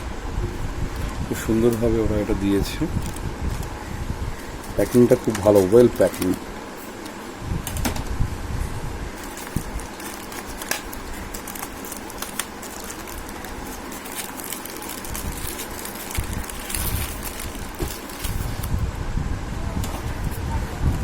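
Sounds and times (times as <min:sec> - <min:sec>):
packaging rustling and crackling: 0:02.5 - 0:03.8, 0:04.5 - 0:07.2, 0:09.2 - 0:18.8.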